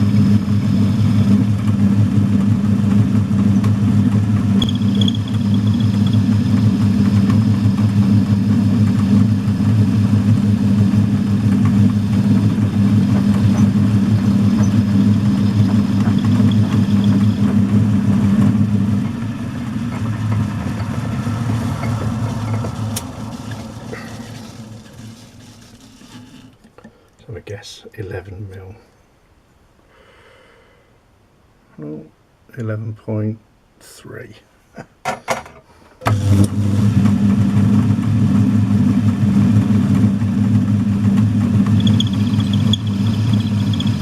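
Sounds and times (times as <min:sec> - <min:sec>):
lathe motor humming: 0:00.0 - 0:26.6, 0:36.1 - 0:44.0.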